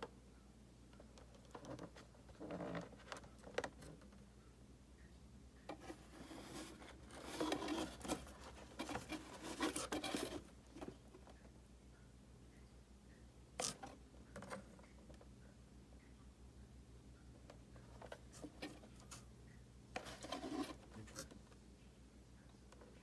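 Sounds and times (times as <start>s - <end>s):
packaging rustling and scraping: 5.8s - 11.0s, 20.0s - 21.2s.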